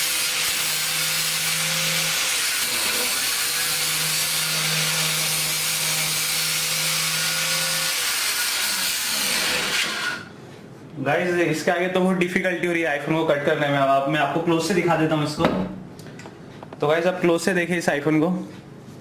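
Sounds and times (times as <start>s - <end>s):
angle grinder cutting: 0.0s - 10.3s.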